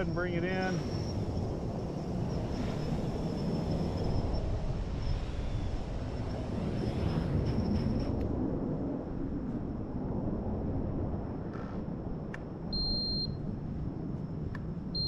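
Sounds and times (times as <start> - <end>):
wind noise on microphone: 0.0 - 15.0
high electronic beep: 12.8 - 13.4.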